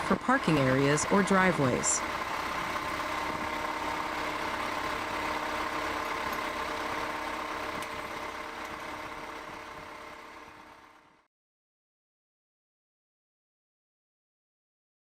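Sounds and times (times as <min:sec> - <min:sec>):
machine engine humming: 0:00.0 - 0:11.3.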